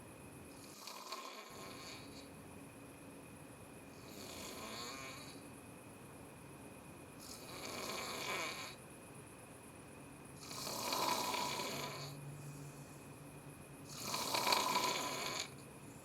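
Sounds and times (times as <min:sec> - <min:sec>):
person snoring: 0:00.6 - 0:02.2, 0:04.0 - 0:05.4, 0:07.2 - 0:08.8, 0:10.4 - 0:12.2, 0:13.9 - 0:15.6.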